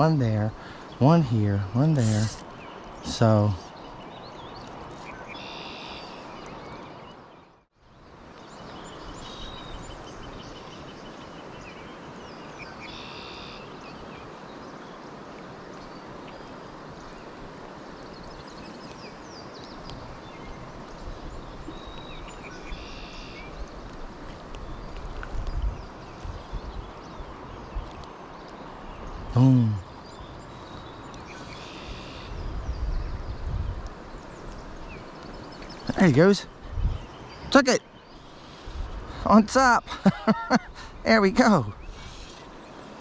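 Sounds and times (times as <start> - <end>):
bird chattering calls: 2.0 - 2.4, 41.8 - 42.5.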